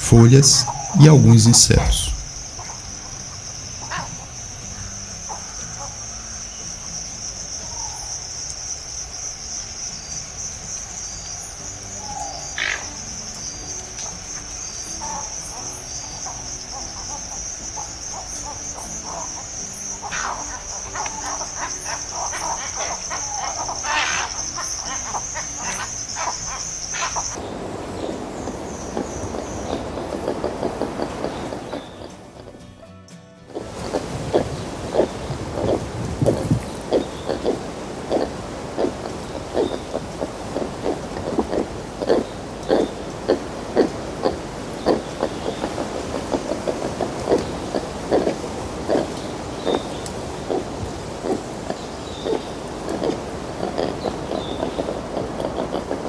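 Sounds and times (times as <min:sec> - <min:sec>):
short sharp sounds: 0:00.0 - 0:02.4
insects chirring: 0:00.0 - 0:56.0.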